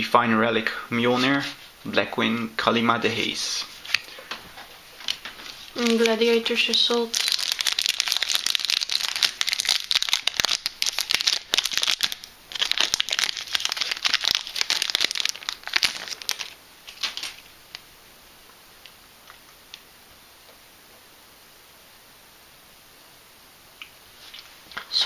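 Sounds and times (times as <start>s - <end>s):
foil wrapper crinkling and tearing: 5.1s - 17.5s.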